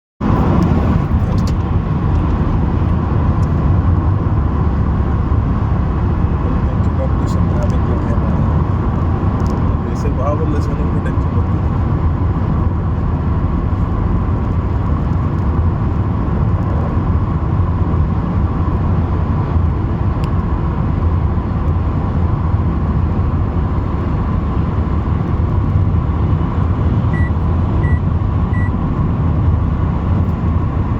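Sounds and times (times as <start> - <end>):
motor vehicle rumble: 0.2 - 30.9
short high beeps: 27.2 - 28.0.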